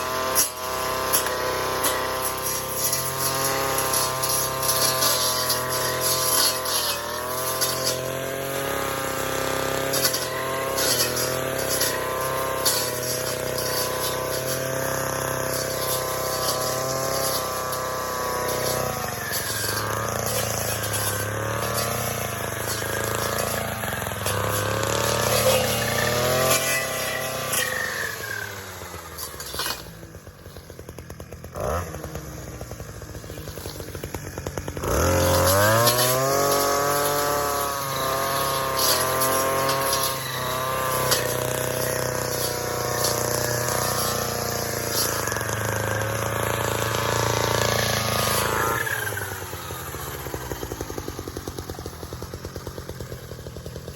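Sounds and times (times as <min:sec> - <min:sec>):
gas weed trimmer running: 0:00.0 - 0:53.9.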